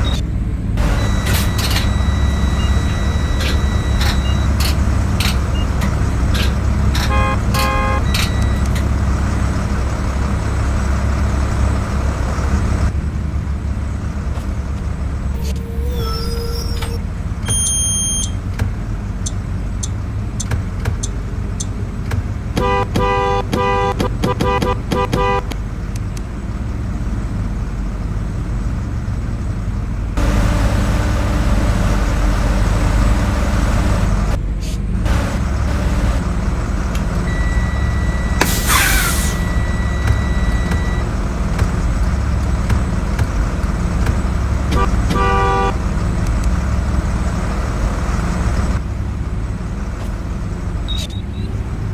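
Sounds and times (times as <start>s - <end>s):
low engine rumble: 0.0s - 17.5s, 28.1s - 38.6s
bus horn honking: 0.8s - 4.1s, 6.8s - 8.7s, 22.6s - 25.6s, 30.2s - 34.4s, 35.0s - 36.4s, 44.6s - 46.0s
brief air hiss: 38.4s - 39.5s.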